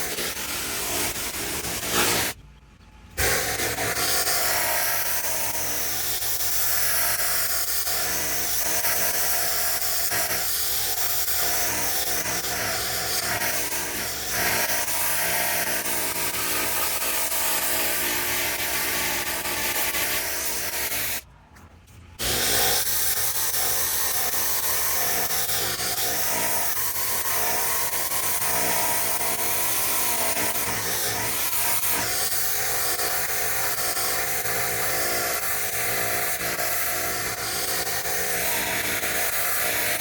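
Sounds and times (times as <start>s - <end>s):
pressure washer engine drone: 0.0s - 2.4s, 3.0s - 21.3s, 22.1s - 40.0s
water jet spraying a surface: 0.0s - 2.4s.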